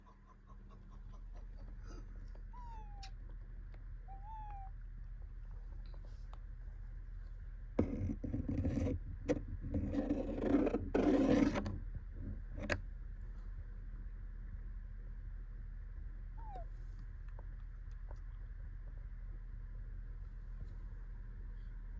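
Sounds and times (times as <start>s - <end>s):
faint cat calls: 2.5s - 3.2s, 4.0s - 4.8s, 16.4s - 16.8s
rustling and scraping: 5.2s - 13.5s.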